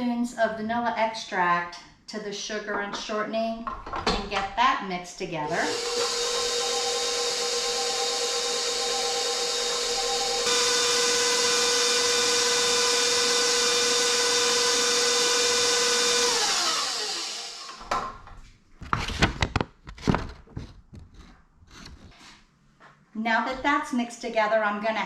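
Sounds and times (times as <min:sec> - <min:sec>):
electric mixer whining: 0:05.5 - 0:18.0.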